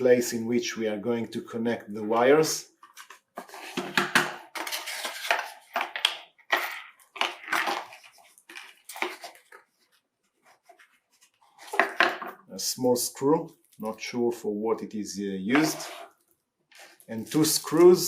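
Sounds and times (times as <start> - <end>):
packaging rustling and crinkling: 4.6 - 12.0.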